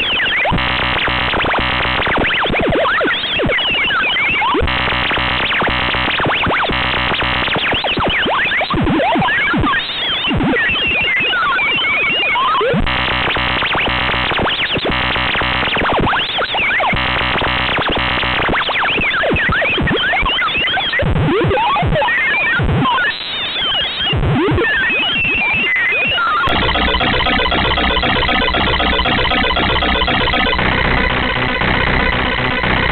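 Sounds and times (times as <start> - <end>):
synthesized blocky patterns with chirps: 0.0 - 9.4, 24.3 - 32.9.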